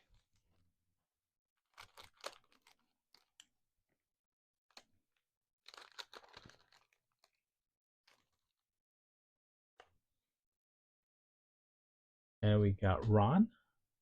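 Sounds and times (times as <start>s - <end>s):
wrapper tearing and crinkling: 1.7s - 3.3s, 5.6s - 7.4s.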